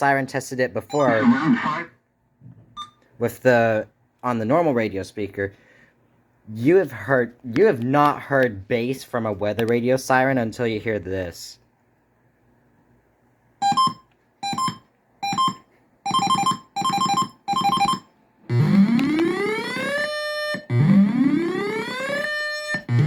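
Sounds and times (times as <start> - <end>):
siren wailing: 0.9 - 1.9, 18.5 - 23.0
short electronic beeps: 2.8 - 3.0.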